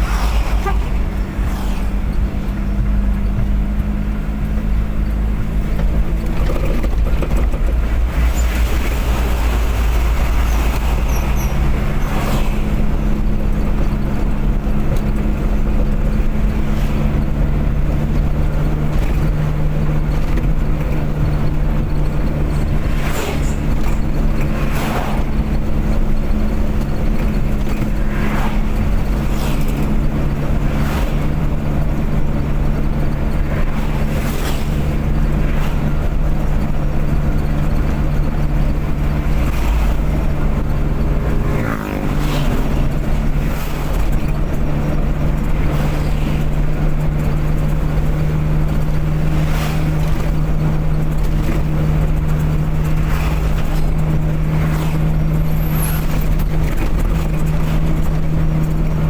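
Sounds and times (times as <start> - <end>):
car engine drone: 0.0 - 59.0
road noise: 0.0 - 59.0.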